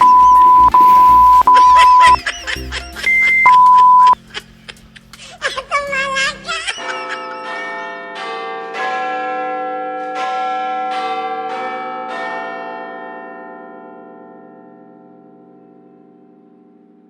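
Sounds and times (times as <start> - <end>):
bells ringing: 0.0 - 4.2, 6.5 - 15.0.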